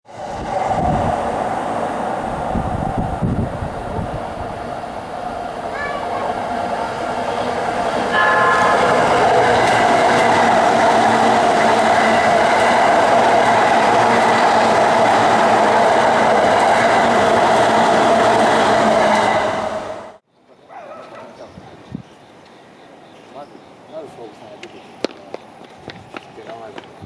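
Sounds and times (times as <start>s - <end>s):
train rushing past: 0.1s - 20.2s
train horn blast: 5.9s - 12.4s.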